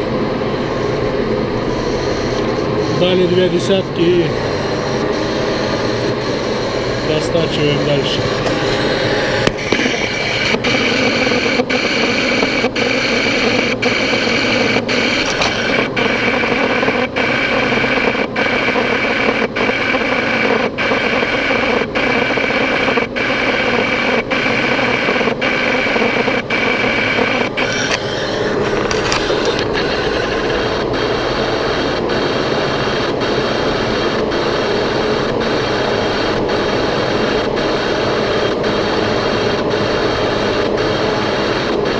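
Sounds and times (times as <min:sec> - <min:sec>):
boring machine grinding: 0:00.0 - 0:41.9
high machine whine: 0:00.0 - 0:41.9.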